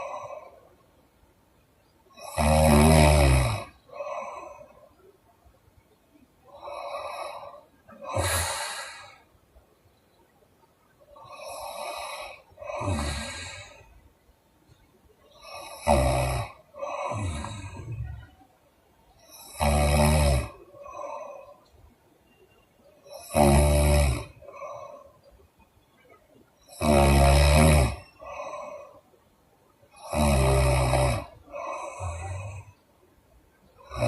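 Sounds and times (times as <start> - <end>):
woman snoring: 2.2 - 4.8, 6.5 - 9.2, 11.2 - 13.8, 15.3 - 18.2, 19.2 - 21.6, 23.0 - 25.1, 26.7 - 29.0, 30.0 - 32.8, 33.8 - 34.0.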